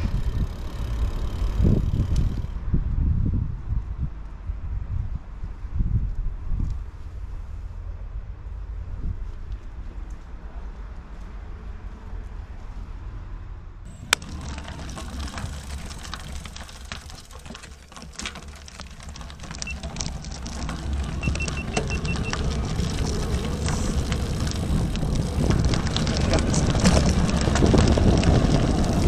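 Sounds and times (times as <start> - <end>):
wind buffeting microphone: 0.0 - 7.4, 13.9 - 29.0.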